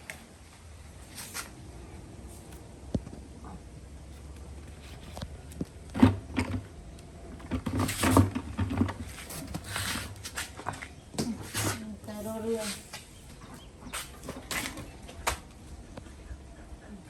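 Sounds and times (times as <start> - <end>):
handling knocks bumps and scraping: 2.3 - 15.5.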